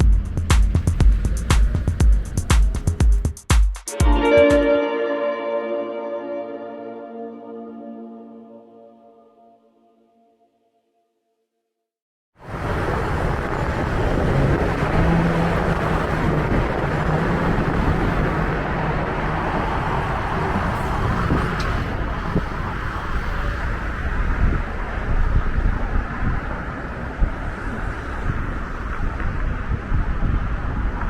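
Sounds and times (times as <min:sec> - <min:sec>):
low engine hum: 0:00.0 - 0:03.4
passing cars traffic rush: 0:00.0 - 0:03.4, 0:12.4 - 0:31.0.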